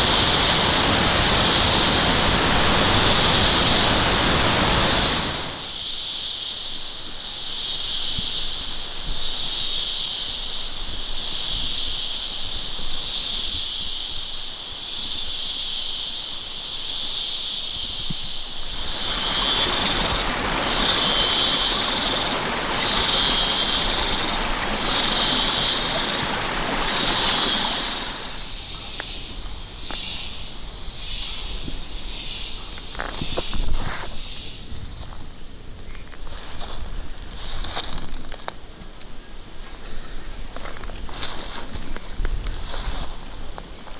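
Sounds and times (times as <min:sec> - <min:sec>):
waterfall rushing water: 0:00.0 - 0:05.7, 0:18.6 - 0:29.0
loud high hiss: 0:00.0 - 0:06.2, 0:18.2 - 0:32.6.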